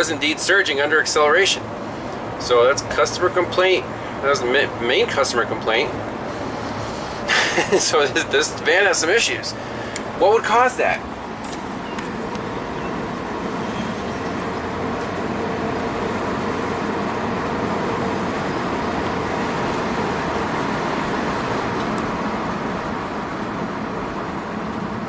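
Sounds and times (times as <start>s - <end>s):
road noise: 0.0s - 25.0s
car engine under throttle: 11.0s - 25.0s.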